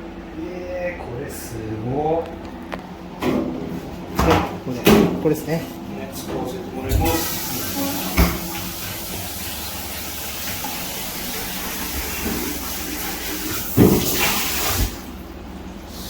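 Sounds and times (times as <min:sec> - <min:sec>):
tap water running into sink: 0:06.9 - 0:15.2.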